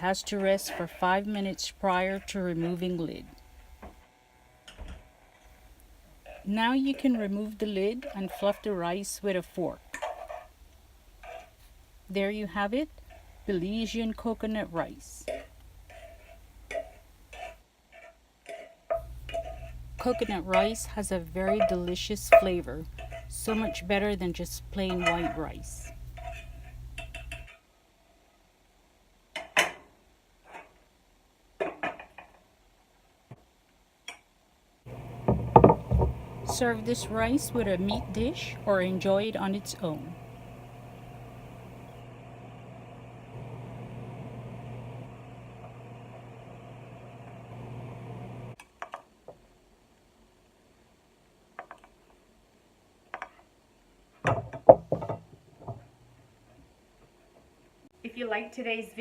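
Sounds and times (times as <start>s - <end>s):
utensil clinking against a pot: 18.4s - 24.2s, 24.8s - 27.6s
knocks and clatters: 35.2s - 37.3s, 54.3s - 55.9s.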